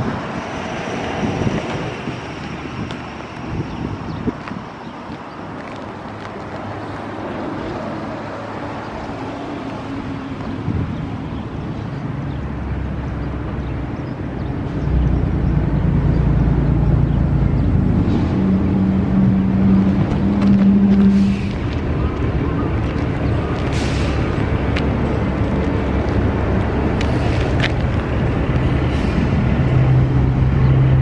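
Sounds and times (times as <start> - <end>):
low rumbling engine: 6.2 - 31.0.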